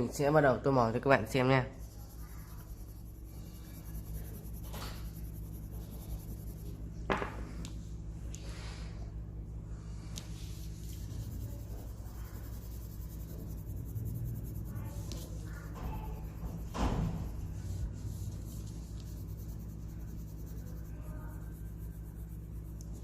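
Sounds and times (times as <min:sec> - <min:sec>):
steady low hum: 0:00.0 - 0:23.0
pens scratching on paper: 0:01.8 - 0:06.8, 0:10.2 - 0:23.0
brush or knock: 0:12.4 - 0:20.8.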